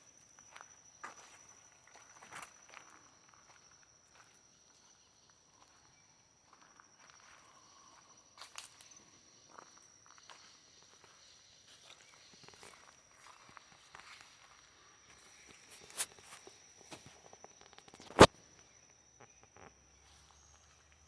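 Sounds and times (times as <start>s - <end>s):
high-pitched insect drone: 0.0s - 21.0s
footsteps on forest floor: 11.8s - 17.3s.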